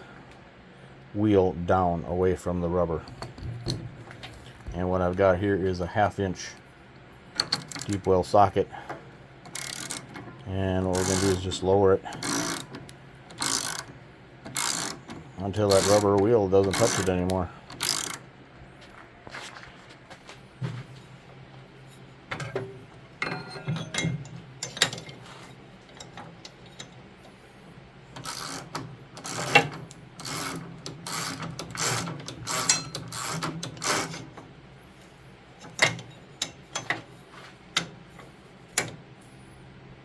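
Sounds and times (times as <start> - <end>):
ratchet wrench clicking: 7.4 - 8.0, 9.5 - 10.2, 10.9 - 11.4, 12.1 - 15.1, 15.7 - 18.2, 28.2 - 34.2.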